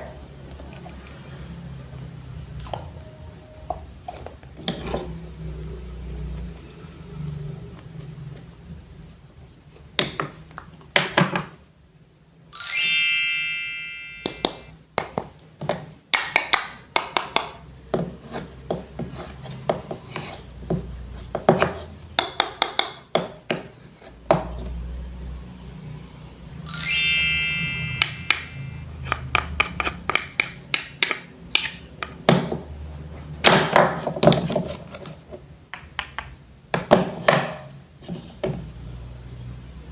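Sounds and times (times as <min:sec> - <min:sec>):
bright ringing pings: 0:12.6 - 0:14.7, 0:26.7 - 0:28.8.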